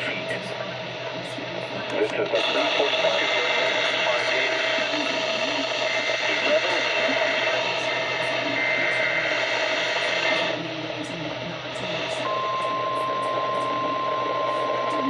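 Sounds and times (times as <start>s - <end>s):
radio static hiss: 0.0s - 15.0s
steady alarm tone: 11.4s - 15.0s.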